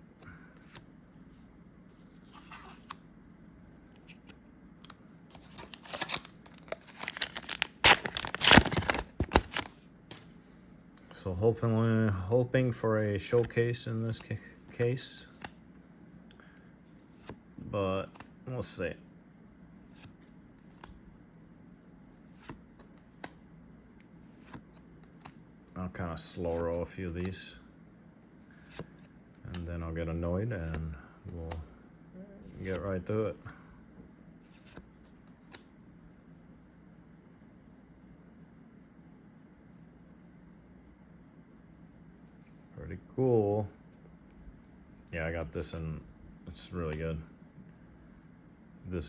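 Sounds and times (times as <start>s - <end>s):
trading cards being flipped: 2.1s - 3.0s, 4.0s - 11.1s, 22.2s - 23.4s, 24.2s - 25.4s, 28.4s - 29.6s, 34.4s - 35.7s
wrapper crinkling and rustling: 5.6s - 9.7s.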